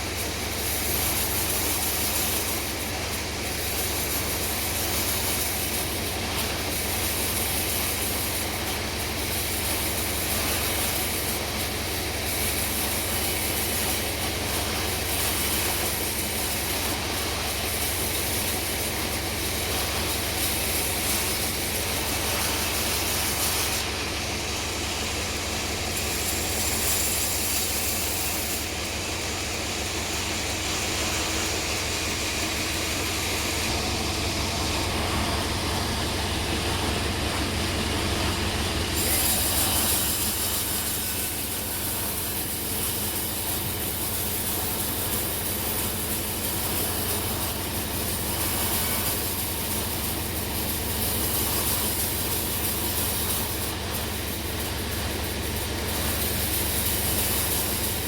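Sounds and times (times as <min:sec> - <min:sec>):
saw hissing through log: 0:00.0 - 0:58.0
low machine hum: 0:16.6 - 0:44.7.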